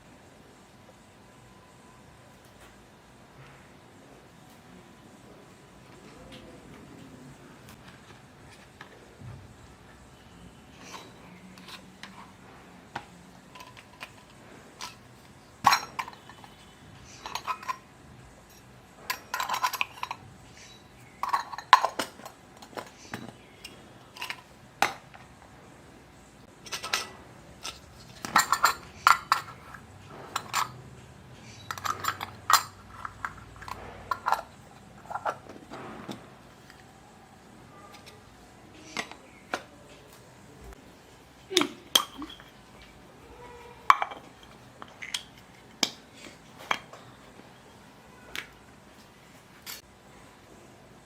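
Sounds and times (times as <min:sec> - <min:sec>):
plastic toy dishes clinking: 0:10.8 - 0:17.9, 0:18.5 - 0:25.3, 0:26.6 - 0:30.8, 0:31.4 - 0:36.8, 0:37.8 - 0:39.9, 0:41.5 - 0:42.7, 0:43.9 - 0:47.2.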